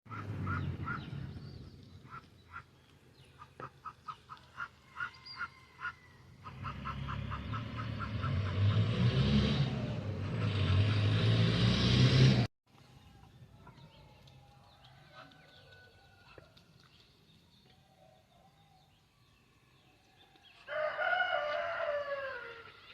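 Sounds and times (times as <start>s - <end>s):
ducks quacking: 0.1s - 1.2s, 3.3s - 8.9s.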